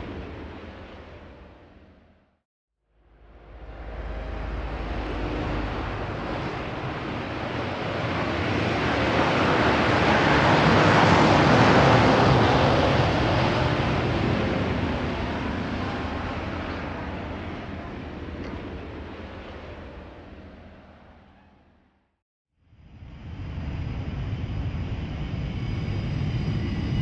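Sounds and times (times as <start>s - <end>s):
airplane passing overhead: 2.9s - 21.7s.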